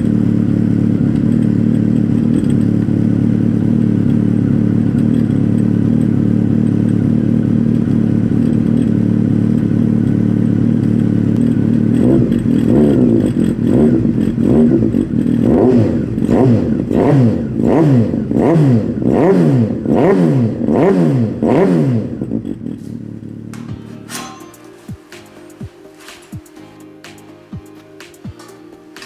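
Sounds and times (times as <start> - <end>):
motorcycle engine idling and revving: 0.0 - 29.0.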